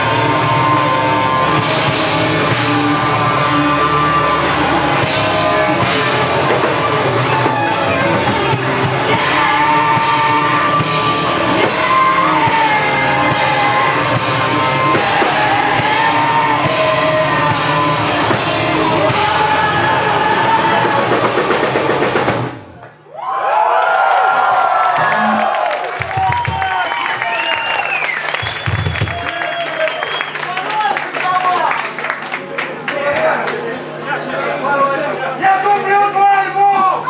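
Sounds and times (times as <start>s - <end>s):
rock band playing live: 0.0s - 22.6s.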